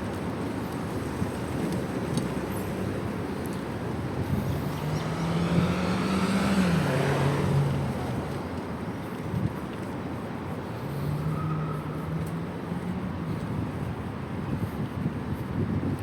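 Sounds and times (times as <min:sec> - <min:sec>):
low rumble of street noise: 0:00.0 - 0:16.0
vehicle engine passing by: 0:04.0 - 0:09.1.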